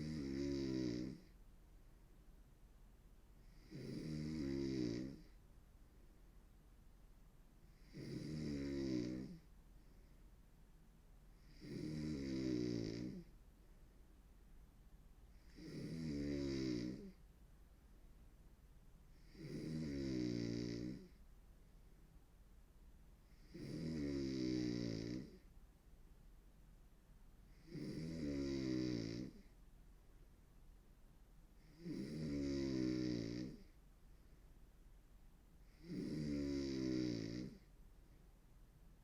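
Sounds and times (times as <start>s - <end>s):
woman snoring: 0.0s - 1.3s, 3.5s - 5.3s, 7.8s - 9.4s, 11.4s - 13.3s, 15.4s - 17.2s, 19.2s - 21.1s, 23.4s - 25.4s, 27.5s - 29.5s, 31.6s - 33.7s, 35.7s - 37.6s.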